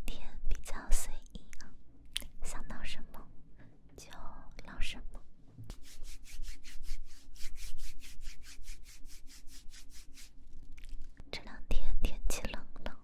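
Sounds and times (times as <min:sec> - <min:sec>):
quick rubbing strokes: 0:05.7 - 0:11.2.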